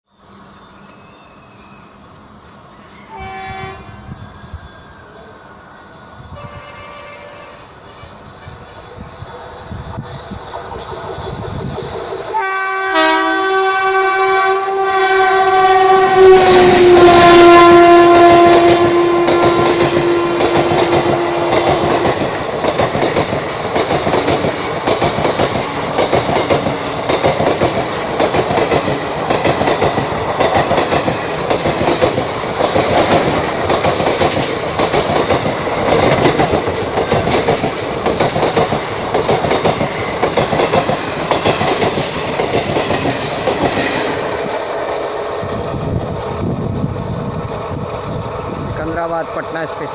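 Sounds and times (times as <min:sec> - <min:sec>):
locomotive horn blast: 0:03.1 - 0:04.2, 0:06.3 - 0:07.8, 0:12.3 - 0:22.2
train wheels clattering over rail joints: 0:18.5 - 0:48.0.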